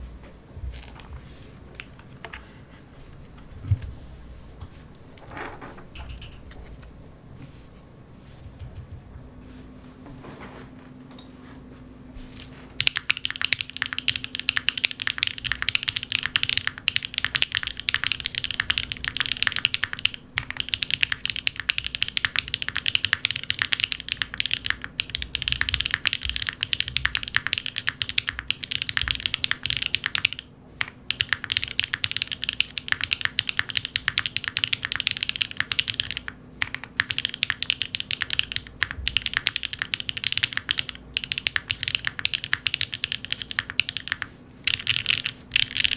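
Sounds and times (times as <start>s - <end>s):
mechanical keyboard typing: 12.8s - 45.9s.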